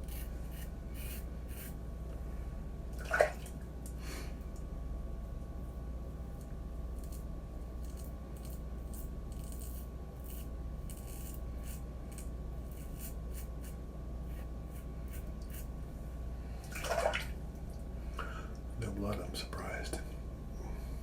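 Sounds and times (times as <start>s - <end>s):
razor shaving stubble: 0.0s - 1.8s, 7.0s - 15.7s.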